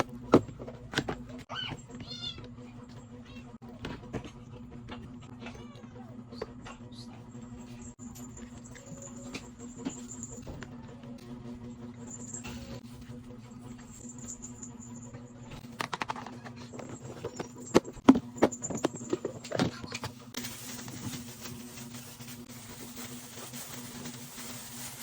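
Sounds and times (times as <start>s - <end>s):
containers knocking and clattering: 15.6s - 21.9s.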